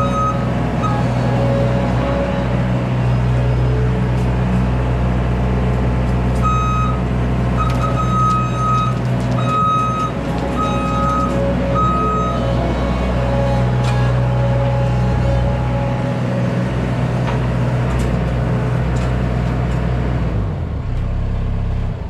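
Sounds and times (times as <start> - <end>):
skid steer engine running: 0.0 - 22.0
backup alarm beeping: 6.4 - 7.0, 7.6 - 12.5.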